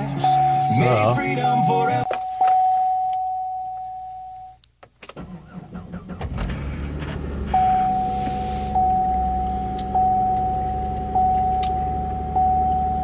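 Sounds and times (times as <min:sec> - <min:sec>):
dashboard warning chime: 0:00.0 - 0:04.6, 0:07.5 - 0:13.0.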